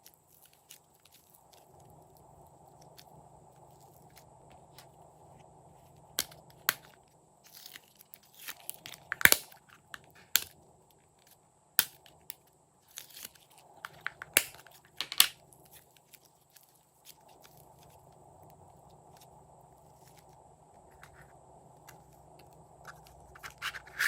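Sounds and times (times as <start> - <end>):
slime popping and crackling: 8.6 - 10.4, 13.9 - 15.3.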